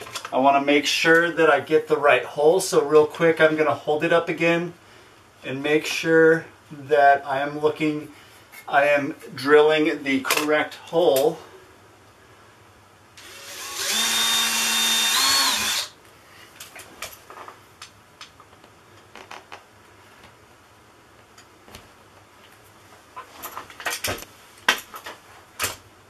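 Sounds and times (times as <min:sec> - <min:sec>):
power drill boring a hole: 0:13.2 - 0:16.0.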